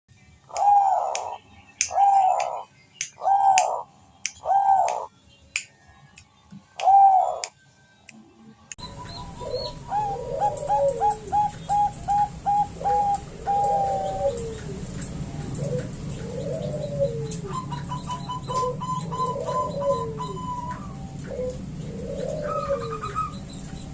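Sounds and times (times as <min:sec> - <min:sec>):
doves cooing: 0:00.5 - 0:05.1, 0:06.8 - 0:07.5, 0:08.8 - 0:23.9
low cooing: 0:00.5 - 0:05.1, 0:06.8 - 0:07.5, 0:08.8 - 0:23.9
steady hum: 0:08.1 - 0:23.9.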